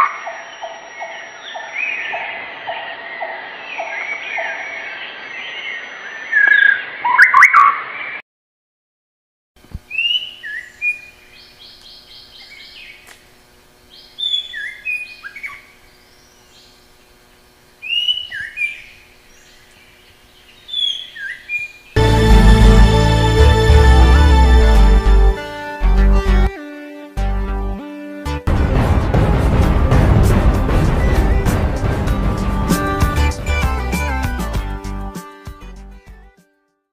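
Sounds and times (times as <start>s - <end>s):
chorus of songbirds chirping: 10.0s - 13.1s, 13.9s - 16.8s, 17.8s - 21.9s
bird whistling and trilling: 14.2s - 15.6s, 17.8s - 18.8s, 20.7s - 21.7s.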